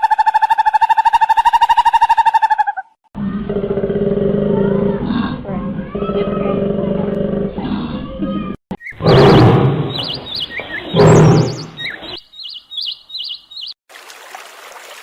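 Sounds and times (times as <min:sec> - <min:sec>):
small bird chirping: 0:08.8 - 0:13.8
loud rough sounds: 0:09.0 - 0:10.3.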